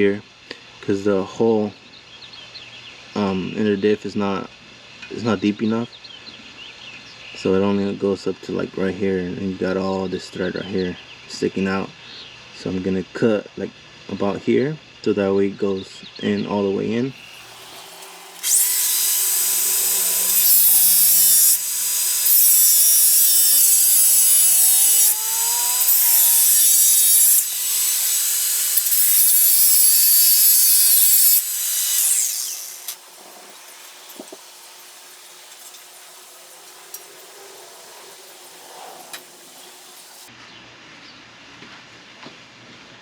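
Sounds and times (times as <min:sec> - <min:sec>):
harsh metal cutting noise: 0:17.2 - 0:40.3.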